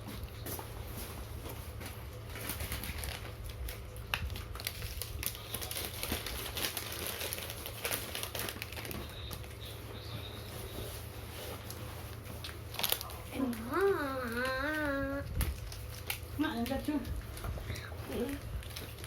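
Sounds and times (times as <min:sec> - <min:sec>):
steady low hum: 0:00.0 - 0:19.0
wafer biscuits crunching: 0:00.1 - 0:16.3
plastic wrappers crackling: 0:00.2 - 0:19.0.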